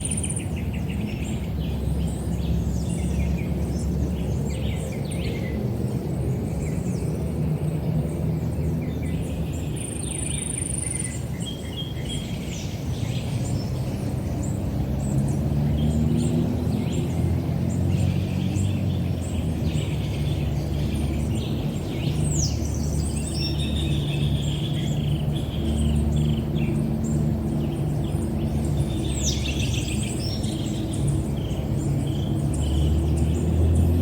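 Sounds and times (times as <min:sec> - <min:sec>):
small birds chirping: 0:00.0 - 0:34.0.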